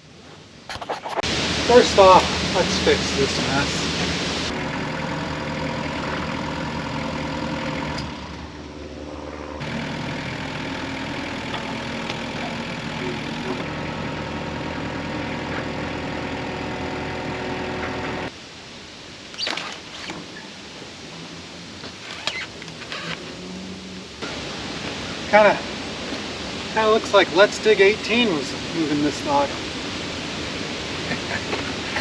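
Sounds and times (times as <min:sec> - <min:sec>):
engine idling: 0:01.2 - 0:18.3.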